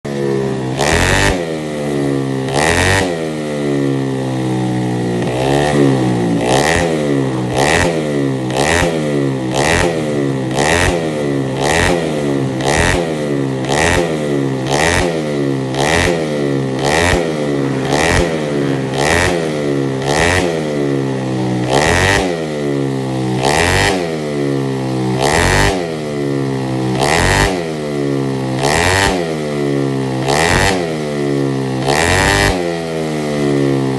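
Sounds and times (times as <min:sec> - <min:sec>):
motorcycle engine throttle blips: 0:00.1 - 0:32.5.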